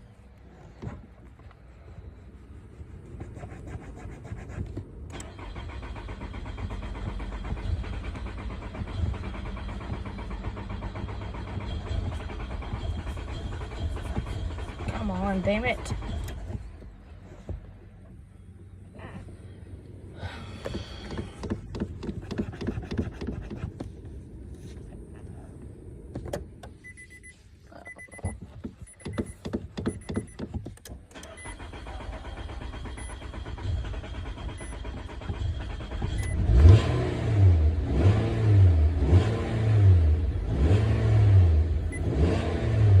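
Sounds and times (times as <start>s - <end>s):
car engine cranking: 4.8s - 43.0s
ignition clicking: 27.9s - 36.5s.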